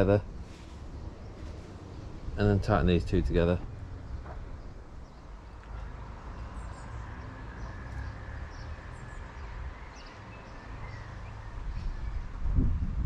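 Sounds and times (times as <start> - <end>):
steady low rumble: 0.0 - 5.9
small birds chirping: 0.0 - 12.4.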